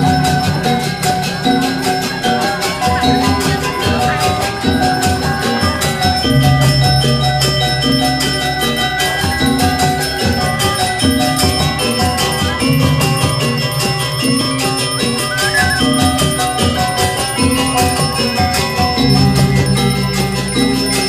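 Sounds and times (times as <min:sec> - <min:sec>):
gamelan metallophones playing: 0:00.0 - 0:21.0
low pulsing beat: 0:00.0 - 0:21.0
deep low gong: 0:06.3 - 0:10.5, 0:18.9 - 0:21.0.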